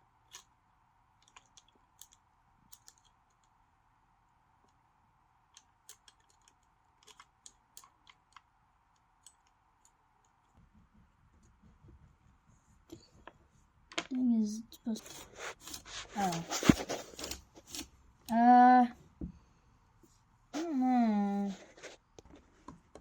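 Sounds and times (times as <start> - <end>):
small hard parts clicking: 0.3 - 0.5, 1.2 - 3.6, 5.5 - 10.5.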